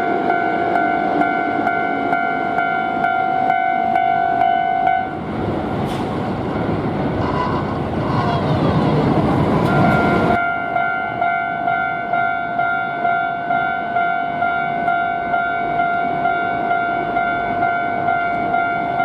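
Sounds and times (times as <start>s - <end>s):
level crossing warning bell: 0.0s - 5.2s, 9.6s - 19.0s
electric train passing: 0.0s - 19.0s.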